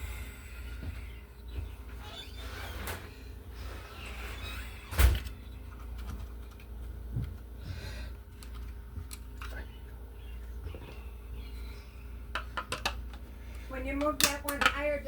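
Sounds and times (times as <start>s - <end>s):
small tools clicking and tapping: 12.3s - 13.2s, 14.0s - 14.9s.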